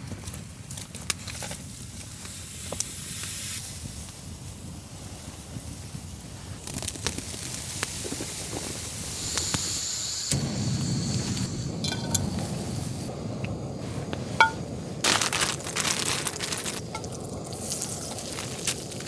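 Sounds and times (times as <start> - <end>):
campfire crackling and hissing: 0.0 - 19.0.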